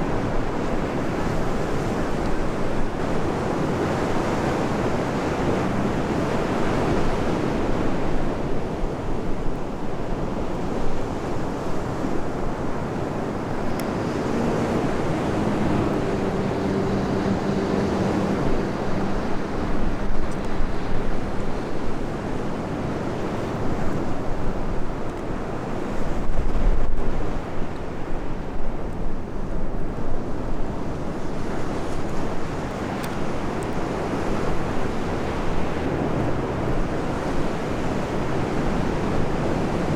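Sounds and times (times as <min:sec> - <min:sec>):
sea waves washing ashore: 0:00.0 - 0:39.9
wind buffeting microphone: 0:00.0 - 0:39.9.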